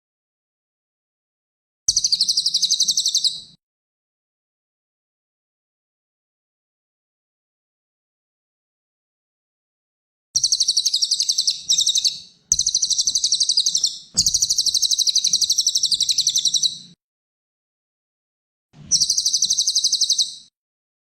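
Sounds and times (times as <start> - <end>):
songbird trilling: 10.4 - 16.8, 18.9 - 20.5.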